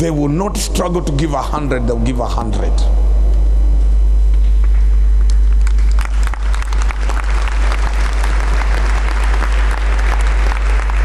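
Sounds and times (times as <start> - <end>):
steady low hum: 0.0 - 11.0
congregation applauding: 5.3 - 11.0.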